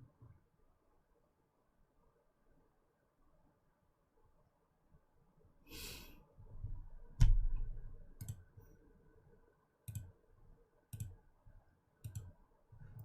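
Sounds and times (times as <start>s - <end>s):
breathy puff of air: 5.7s - 6.2s
soft clicks: 10.9s - 11.2s, 12.0s - 13.0s.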